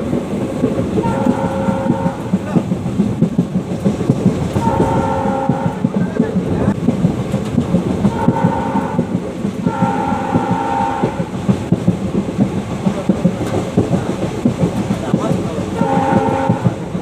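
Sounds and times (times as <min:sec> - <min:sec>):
diesel locomotive engine chugging: 0:00.0 - 0:17.0
locomotive horn: 0:01.0 - 0:02.4, 0:04.6 - 0:06.0, 0:08.1 - 0:11.4, 0:15.8 - 0:16.9.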